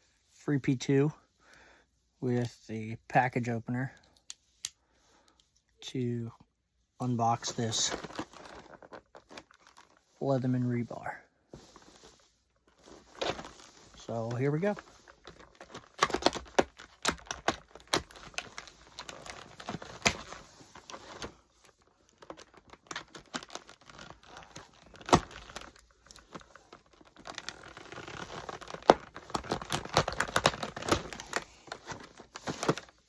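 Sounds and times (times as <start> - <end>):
plastic packaging crackling: 7.4 - 10.1, 12.7 - 33.0.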